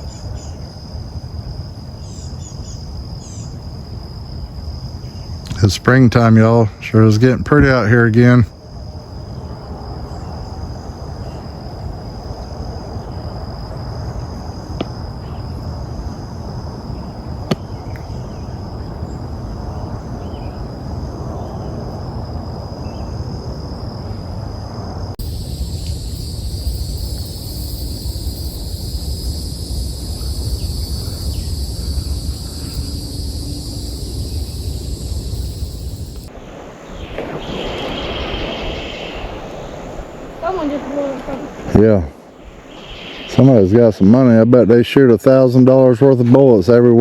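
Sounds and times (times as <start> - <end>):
insects trilling: 0.0 - 47.0
wind on microphone: 8.6 - 43.4.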